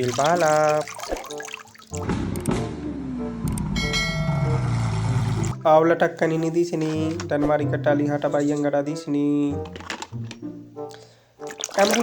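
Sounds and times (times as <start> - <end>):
water running and splashing: 0.0 - 2.1, 11.4 - 12.0
background music: 0.0 - 12.0.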